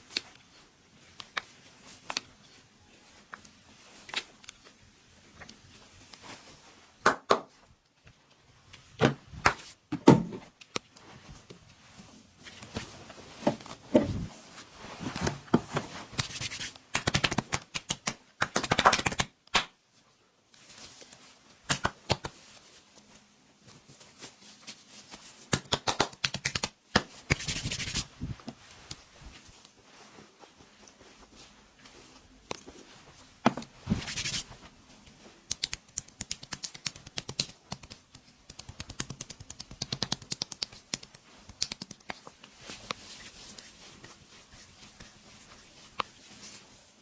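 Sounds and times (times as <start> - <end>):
hands slapping and tapping body: 7.0 - 11.7, 15.2 - 19.8, 21.2 - 22.6, 25.1 - 29.8, 33.4 - 34.5, 35.4 - 46.6
hands rubbing skin: 16.0 - 19.3, 24.0 - 47.0.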